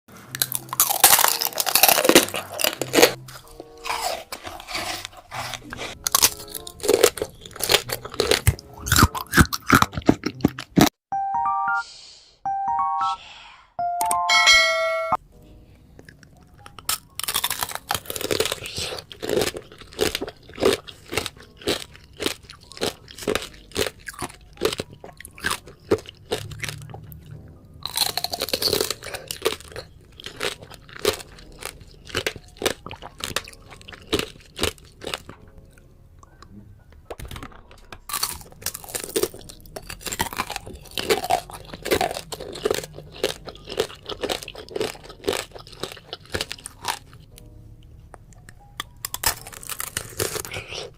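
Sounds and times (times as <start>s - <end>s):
crunching and chewing of fruit: 0.1s - 10.9s, 16.0s - 50.9s.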